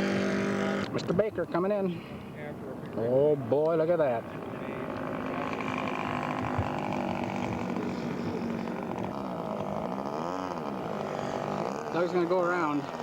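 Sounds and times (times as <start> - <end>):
model airplane engine: 3.7 - 13.0.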